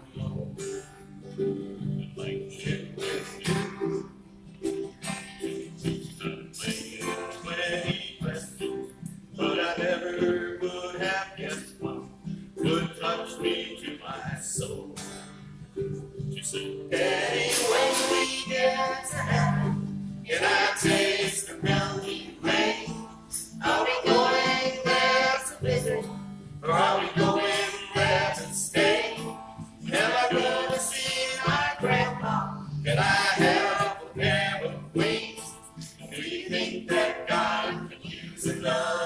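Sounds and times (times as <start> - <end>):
singing voices: 0.0 - 0.6, 1.8 - 4.0, 5.7 - 8.8, 9.4 - 15.2, 16.4 - 39.0
gospel band performing: 16.0 - 39.0.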